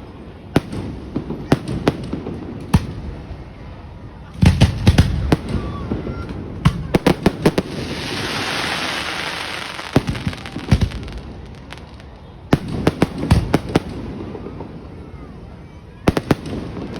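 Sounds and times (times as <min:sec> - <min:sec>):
fireworks bangs: 0:00.2 - 0:16.9
fireworks hissing crackle: 0:06.9 - 0:16.9.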